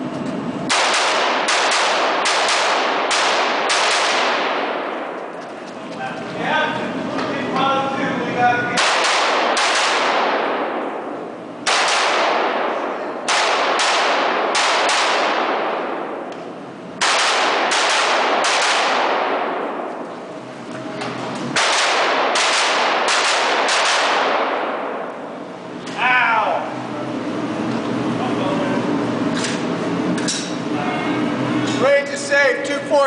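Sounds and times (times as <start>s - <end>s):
echoing rifle shots: 0.6s - 5.3s, 8.7s - 16.3s, 17.0s - 20.1s, 21.5s - 25.3s.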